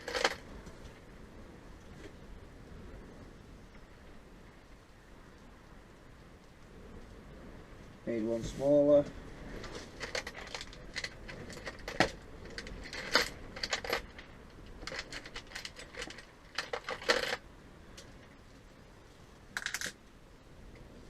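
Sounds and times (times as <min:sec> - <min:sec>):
metal tools clinking: 0:10.0 - 0:14.2, 0:14.8 - 0:17.4.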